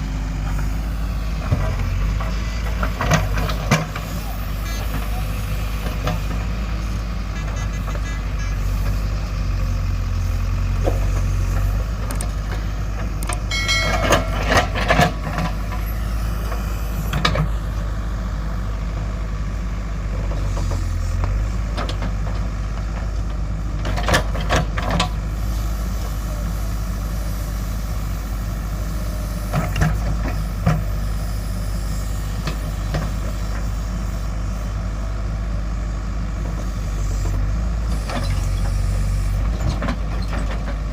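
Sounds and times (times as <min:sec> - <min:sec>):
diesel engine running: 0:00.0 - 0:40.9
metallic clanks and knocks: 0:13.3 - 0:15.8.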